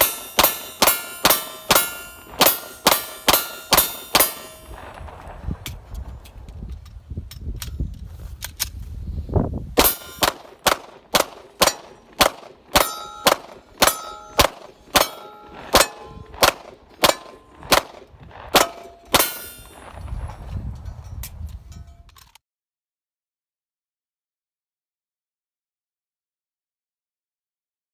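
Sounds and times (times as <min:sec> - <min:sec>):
metallic ring of steel targets: 0:00.0 - 0:04.8, 0:09.8 - 0:22.4
pistol shots: 0:00.0 - 0:05.0, 0:09.8 - 0:19.8.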